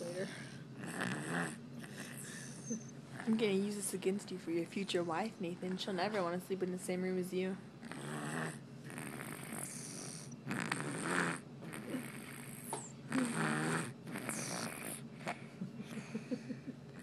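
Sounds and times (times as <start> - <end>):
baby snoring: 0.0 - 3.4, 7.8 - 15.5.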